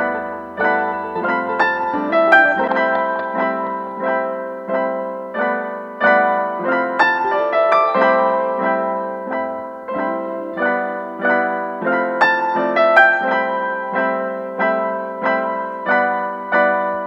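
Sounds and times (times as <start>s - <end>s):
piano music: 0.0s - 17.0s.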